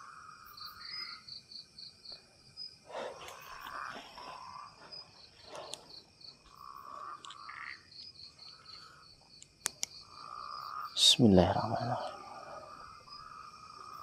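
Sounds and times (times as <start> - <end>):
crickets chirping: 0.0 - 14.0
sharp clicks: 9.4 - 10.0.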